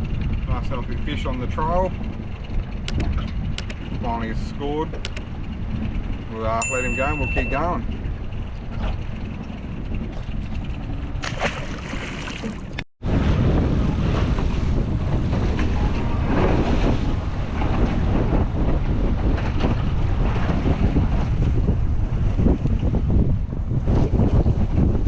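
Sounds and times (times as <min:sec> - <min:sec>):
boat on water: 0:00.0 - 0:25.0
wind buffeting microphone: 0:08.2 - 0:25.0.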